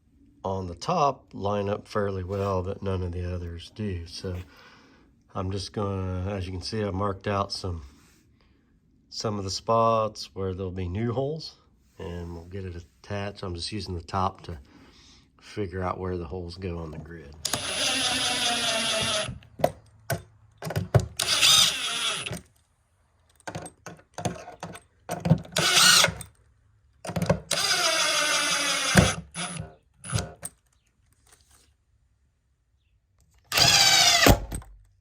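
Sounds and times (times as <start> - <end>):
power drill running: 17.4 - 19.6, 21.1 - 22.4, 25.5 - 26.3, 27.2 - 30.4, 33.5 - 34.5
handling knocks and clicks: 19.0 - 21.4, 23.2 - 26.4, 27.0 - 27.6.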